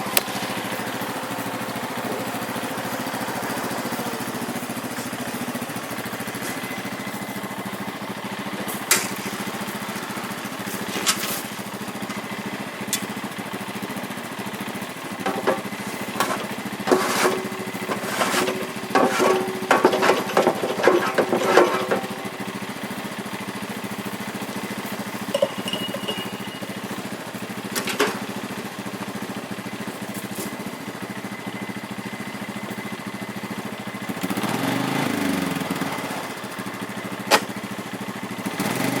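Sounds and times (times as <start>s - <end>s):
engine running: 0.0s - 39.0s
rapid clattering: 15.2s - 22.3s.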